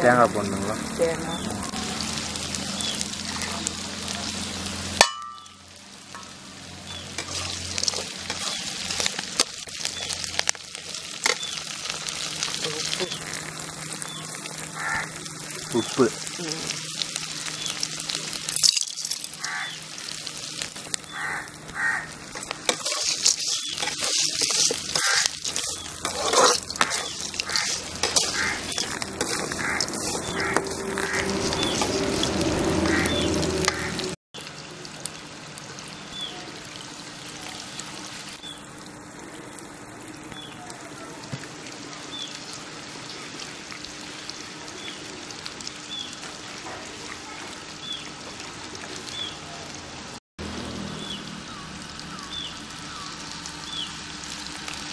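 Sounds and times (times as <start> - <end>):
food sizzling in a pan: 0.0 - 54.9
spoon scraping a pan: 7.1 - 9.3, 22.4 - 33.8.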